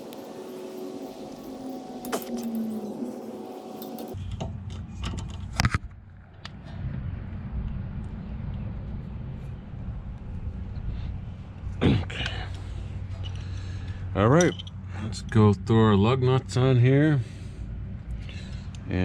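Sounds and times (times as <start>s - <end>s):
sharp metal clank: 2.0s - 2.8s
metal hand tools clinking: 3.6s - 4.2s, 14.4s - 14.8s
low steady rumble: 4.1s - 19.0s.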